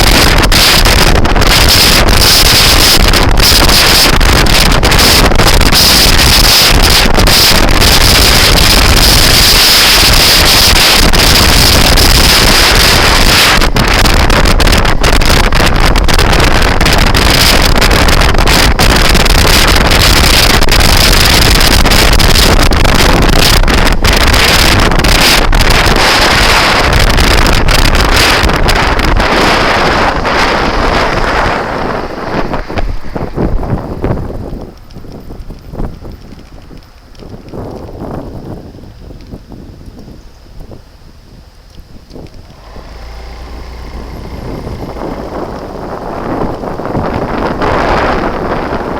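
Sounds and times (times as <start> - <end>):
wind buffeting microphone: 0.0 - 48.9.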